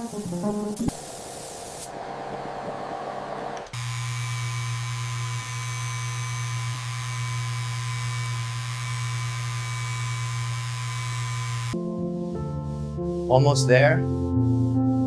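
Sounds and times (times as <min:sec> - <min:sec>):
hiss of spray: 0:00.0 - 0:01.9
paint sprayer motor hum: 0:03.4 - 0:11.8.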